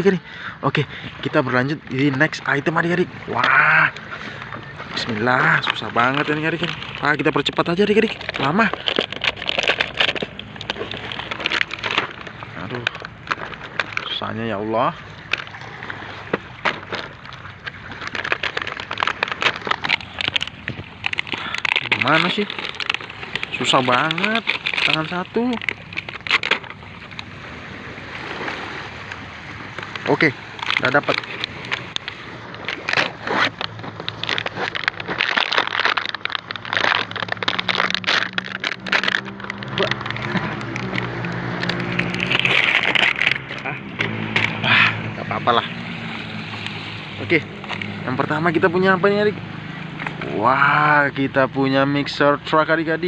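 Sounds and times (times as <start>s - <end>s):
packaging rustling and crinkling: 3.4s - 14.2s, 15.2s - 27.3s, 29.6s - 48.7s.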